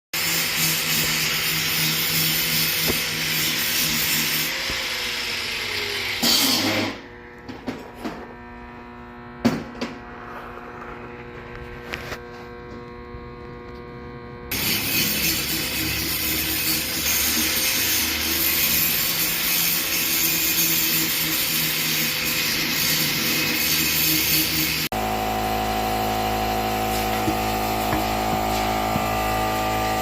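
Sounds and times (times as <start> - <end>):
machine hum: 24.9 - 30.0.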